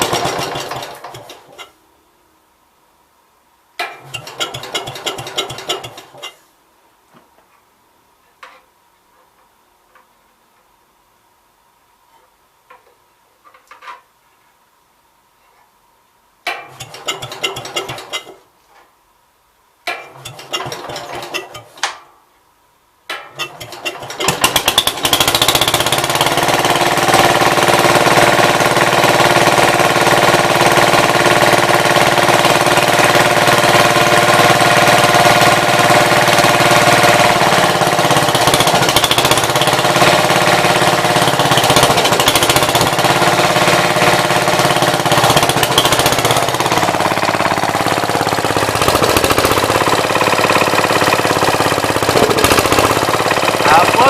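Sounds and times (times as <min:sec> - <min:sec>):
tractor engine running: 0:00.0 - 0:01.7, 0:04.0 - 0:06.3, 0:16.7 - 0:18.4, 0:20.1 - 0:21.8, 0:23.3 - 0:54.0.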